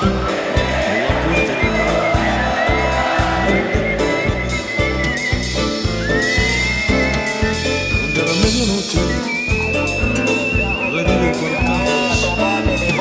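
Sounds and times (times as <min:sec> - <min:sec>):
high sliding whistle-like tone: 0:00.0 - 0:13.0
music with steady drum beat: 0:00.0 - 0:13.0.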